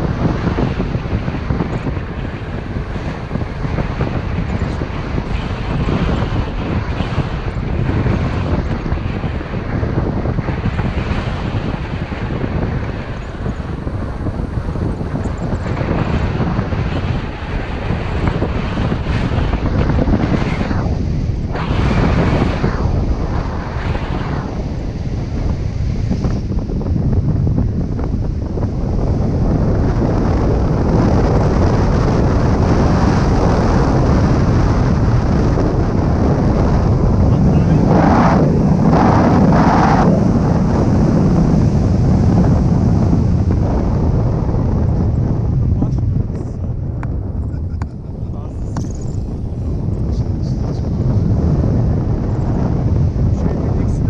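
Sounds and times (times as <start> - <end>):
strong wind on microphone: 0.0 - 54.0.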